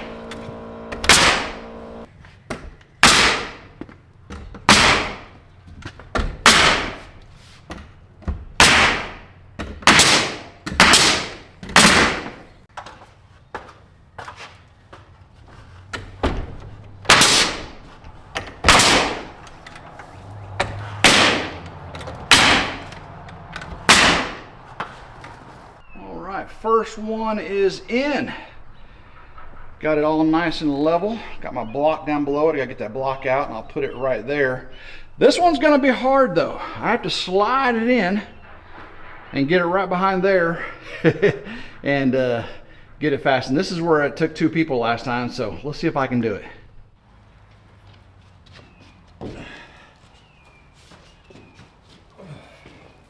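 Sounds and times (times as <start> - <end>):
hammer driving nails into wood: 0.9 - 1.6, 2.5 - 3.7, 4.3 - 5.4, 6.1 - 7.8, 8.6 - 12.5, 17.0 - 19.8, 20.6 - 23.0, 23.6 - 24.5.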